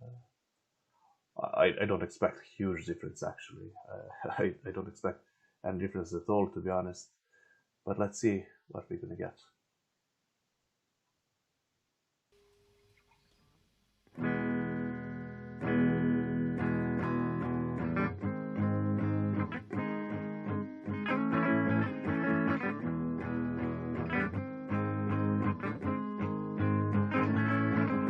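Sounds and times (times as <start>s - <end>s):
clean electric guitar chords: 14.2s - 28.0s.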